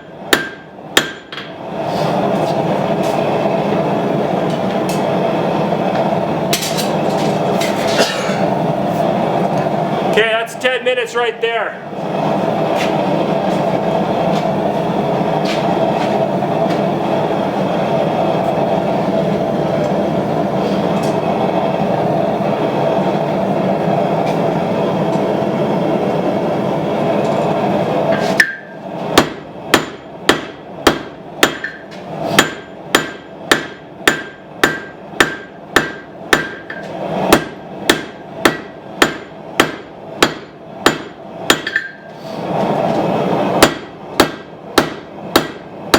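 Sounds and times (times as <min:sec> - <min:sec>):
hammer striking steel on anvil: 0:00.3 - 0:01.5, 0:28.4 - 0:42.1, 0:43.6 - 0:45.7
forge roaring: 0:00.8 - 0:10.5, 0:11.7 - 0:33.4.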